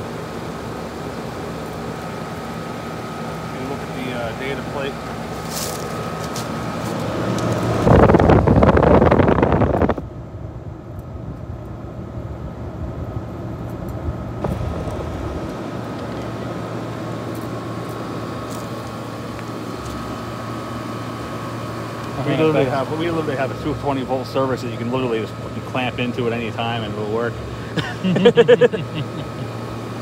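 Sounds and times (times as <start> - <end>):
air conditioner humming: 0.0 - 30.0
loud rushing noise: 14.4 - 15.9.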